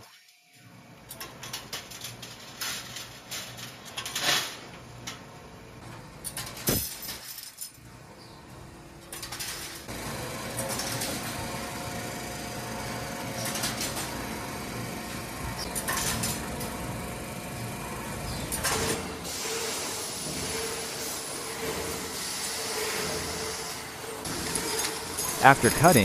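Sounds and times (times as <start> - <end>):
metalworking machinery clattering: 13.2 - 16.8, 24.3 - 26.0.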